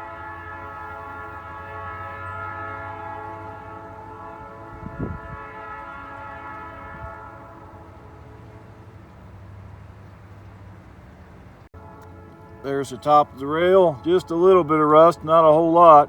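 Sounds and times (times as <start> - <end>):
locomotive air horn chord: 0.0 - 9.8, 11.8 - 16.0
locomotive engines rumbling: 0.0 - 16.0.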